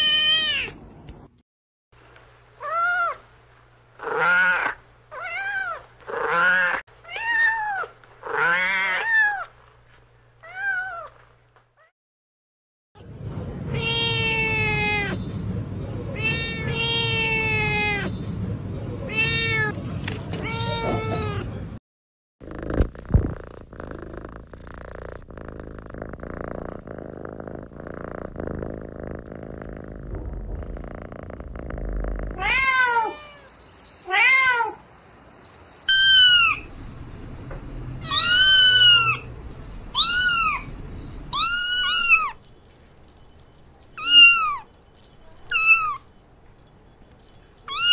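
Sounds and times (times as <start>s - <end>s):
kittens meowing: 20.4s - 21.5s, 35.9s - 36.7s, 38.0s - 39.3s, 39.9s - 40.7s, 41.3s - 46.2s, 46.9s - 47.9s.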